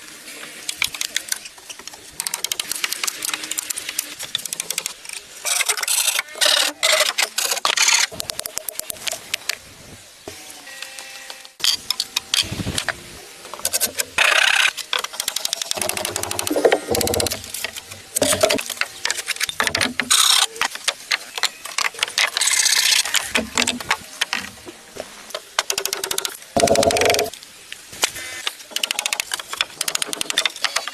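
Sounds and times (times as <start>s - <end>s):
wood clicking and knocking: 14.9s - 22.5s, 23.1s - 24.5s, 25.3s - 27.3s.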